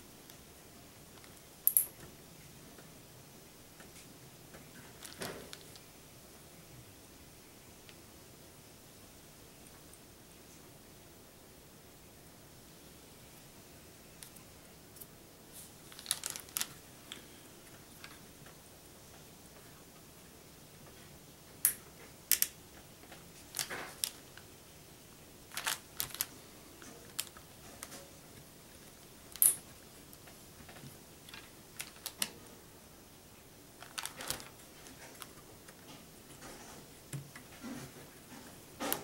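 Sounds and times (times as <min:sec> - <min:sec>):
plastic push pins clicking: 0:25.5 - 0:26.3.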